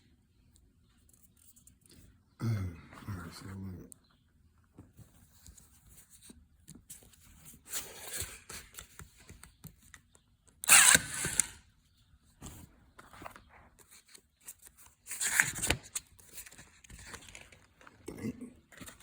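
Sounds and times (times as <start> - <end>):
paper ripping: 10.6 - 11.6
paper pages rustling: 12.4 - 18.0.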